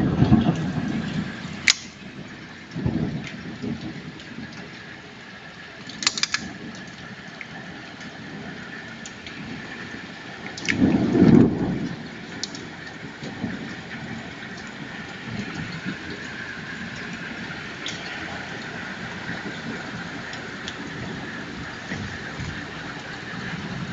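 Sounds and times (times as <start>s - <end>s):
thunder clap: 0.0s - 4.5s, 10.6s - 23.9s
hailstones ticking: 0.0s - 23.9s
steady rain: 0.0s - 23.9s.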